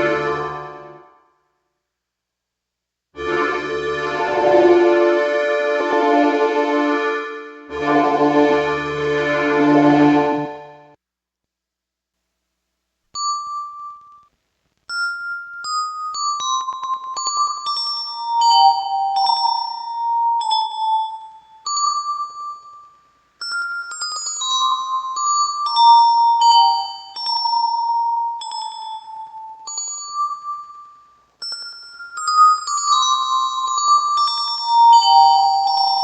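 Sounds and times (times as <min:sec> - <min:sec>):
keyboard bell-like melody with echo: 0:00.0 - 0:01.1, 0:14.9 - 0:36.0.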